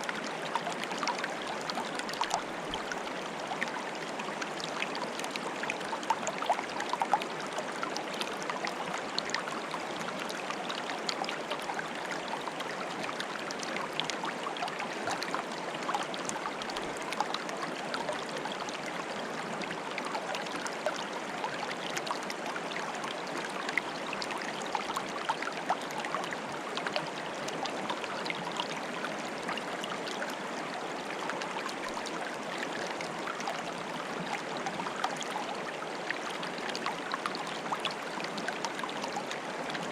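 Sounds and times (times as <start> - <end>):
stream bubbling and gurgling: 0.0 - 39.9.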